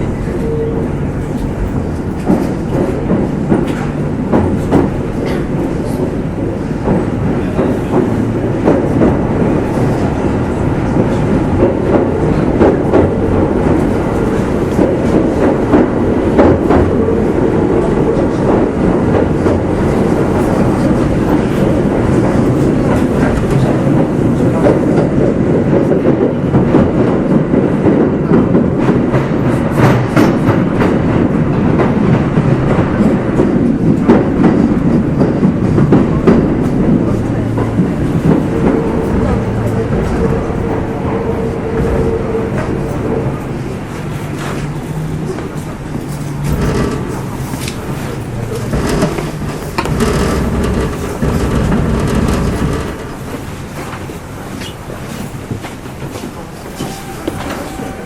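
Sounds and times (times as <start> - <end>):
wheels clicking over rail joints: 1.2 - 58.0
electric train running: 32.7 - 58.0.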